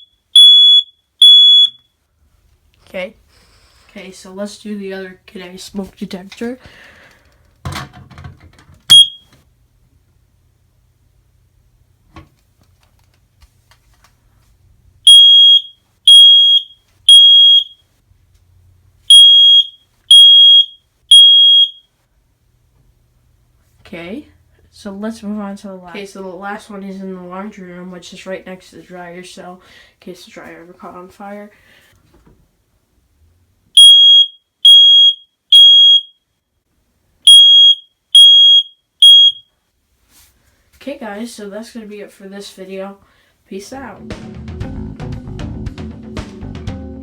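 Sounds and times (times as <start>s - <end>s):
smoke alarm beeping: 0.0s - 1.9s, 8.9s - 9.3s, 15.0s - 17.8s, 19.1s - 21.9s, 33.8s - 36.2s, 37.3s - 39.5s.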